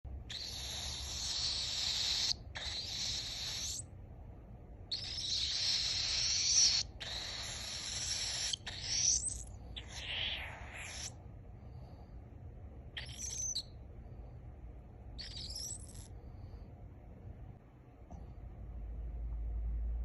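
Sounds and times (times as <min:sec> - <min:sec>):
bird hissing: 0:00.3 - 0:03.9, 0:04.9 - 0:11.2.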